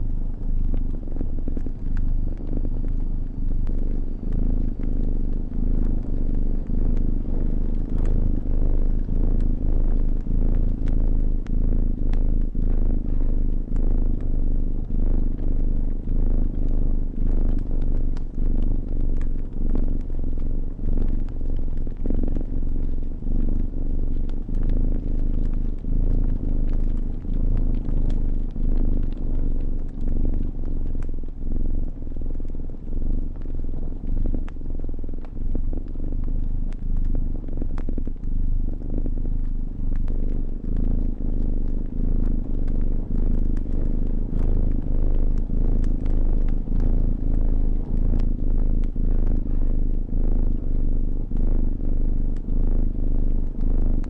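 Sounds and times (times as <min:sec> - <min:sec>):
cat purring: 0:00.0 - 0:54.0
fire crackling and popping: 0:00.1 - 0:54.0.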